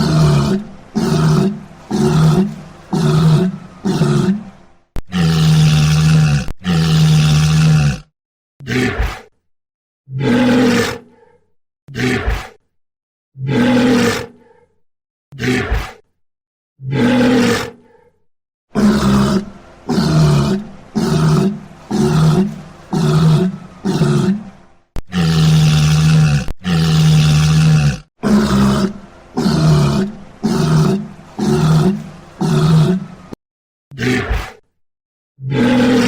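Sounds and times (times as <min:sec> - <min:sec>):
walrus calling: 0:00.0 - 0:05.3, 0:18.8 - 0:26.9, 0:27.8 - 0:33.3.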